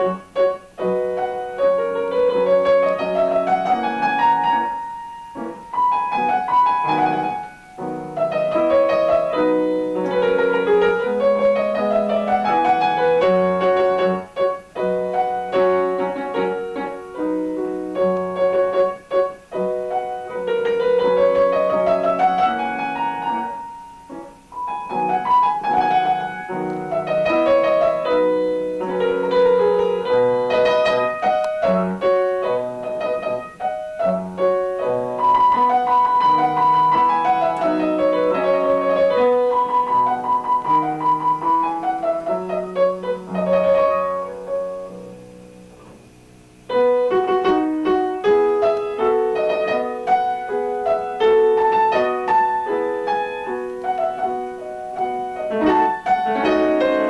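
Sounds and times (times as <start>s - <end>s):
solo piano piece: 0.0s - 57.0s.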